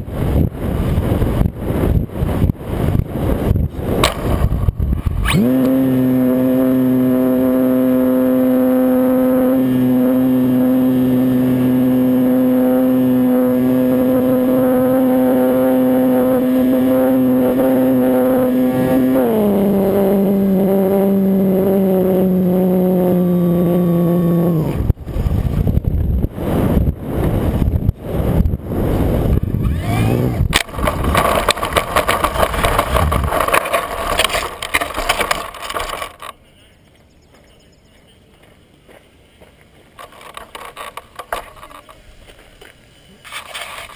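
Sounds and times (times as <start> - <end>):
rushing air gusts: 0.0 - 6.2, 24.6 - 35.9
model plane motor running: 4.0 - 25.7, 27.2 - 36.4, 40.0 - 42.0.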